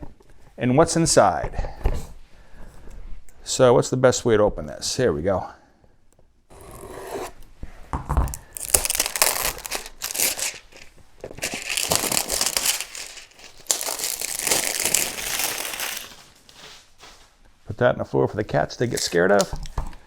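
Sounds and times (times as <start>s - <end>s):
packaging tearing and crinkling: 8.3s - 17.1s.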